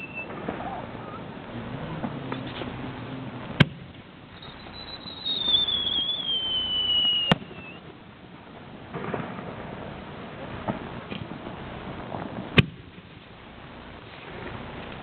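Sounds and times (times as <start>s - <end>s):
falling firework whistle: 0.0s - 1.3s, 3.6s - 7.9s
firework bang: 2.0s - 8.0s, 8.8s - 13.3s.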